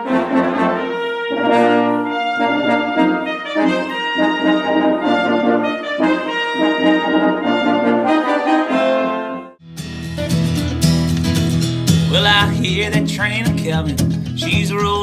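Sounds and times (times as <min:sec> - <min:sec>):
brass ensemble playing: 0:00.0 - 0:09.6.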